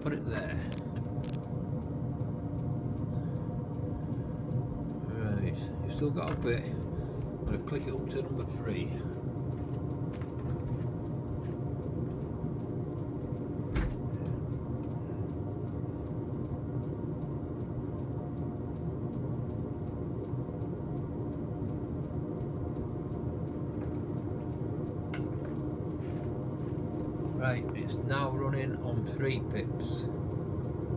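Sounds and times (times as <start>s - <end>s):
air heater humming with ticks: 0.0s - 30.9s.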